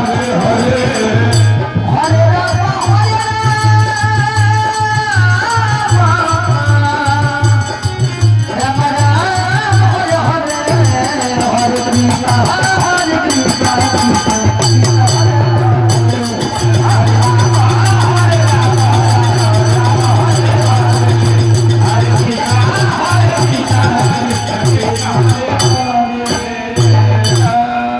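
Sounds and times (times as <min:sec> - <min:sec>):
fast drum beat: 0:00.0 - 0:27.6
jingling hand percussion: 0:00.0 - 0:27.9.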